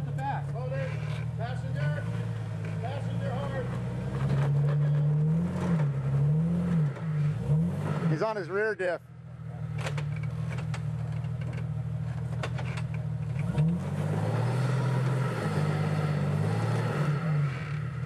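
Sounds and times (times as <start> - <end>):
engine revving under load: 0.6 - 8.8, 9.4 - 18.0.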